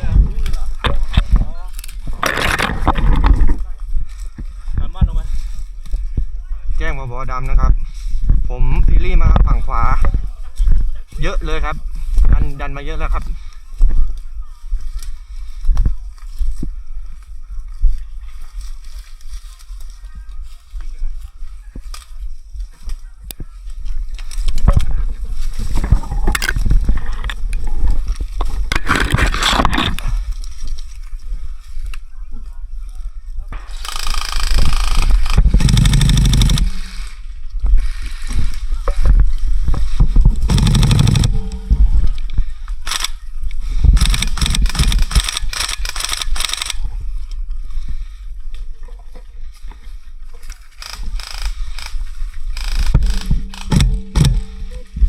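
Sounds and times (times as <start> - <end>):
low rumble of wind noise: 0.0 - 55.0
scattered clicks: 0.4 - 3.4, 25.9 - 27.6, 33.6 - 37.2, 40.4 - 43.2, 43.9 - 46.8, 50.8 - 52.0, 52.6 - 55.0
scraping and rustling through brush: 13.3 - 55.0.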